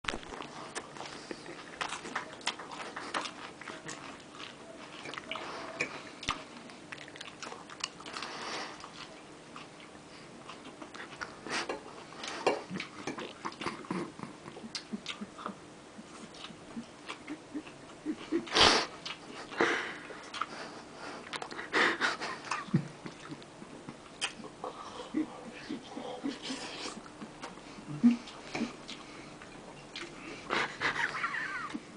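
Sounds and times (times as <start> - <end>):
food crunching: 0.1 - 21.6
chewing and biting: 0.1 - 21.7, 24.1 - 30.9.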